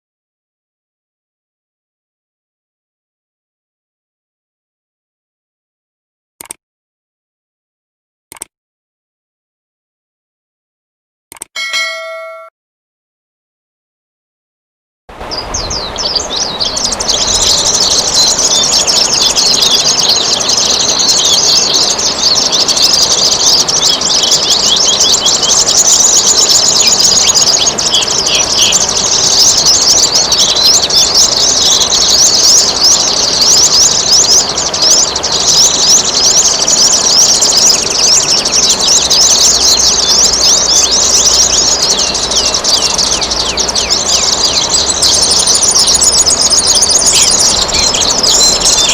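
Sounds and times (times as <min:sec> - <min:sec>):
songbirds chirping: 0:15.1 - 0:48.9
trickling water: 0:15.1 - 0:48.9.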